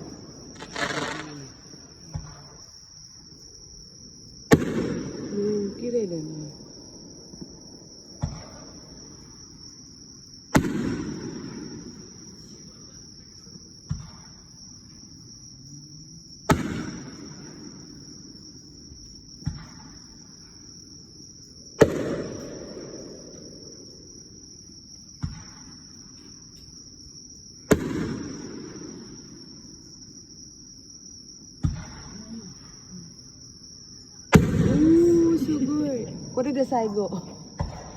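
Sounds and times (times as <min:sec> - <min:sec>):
firework booms: 0:00.0 - 0:02.7, 0:04.4 - 0:09.3, 0:10.5 - 0:12.6, 0:13.8 - 0:14.5, 0:16.5 - 0:18.3, 0:19.4 - 0:20.3, 0:21.8 - 0:24.1, 0:25.1 - 0:26.0, 0:27.6 - 0:29.7, 0:31.6 - 0:32.7, 0:34.3 - 0:36.4, 0:37.4 - 0:37.9
cricket trill: 0:00.0 - 0:37.9
soft firework thud: 0:00.6 - 0:01.5, 0:04.5 - 0:05.3, 0:08.2 - 0:08.6, 0:10.6 - 0:11.5, 0:13.9 - 0:14.4, 0:16.5 - 0:17.3, 0:19.4 - 0:20.0, 0:21.8 - 0:23.1, 0:25.2 - 0:25.8, 0:31.6 - 0:32.2, 0:34.3 - 0:35.1, 0:37.6 - 0:37.9.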